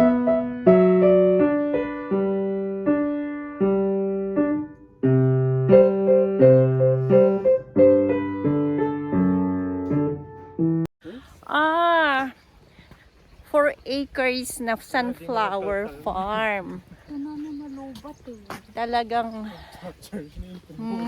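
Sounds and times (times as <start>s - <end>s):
piano bass line: 0.0s - 10.9s
slow piano melody: 0.0s - 10.9s.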